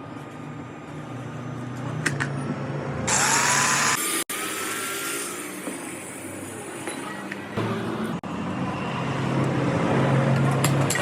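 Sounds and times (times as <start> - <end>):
electric grinder grinding metal: 3.1 - 5.7.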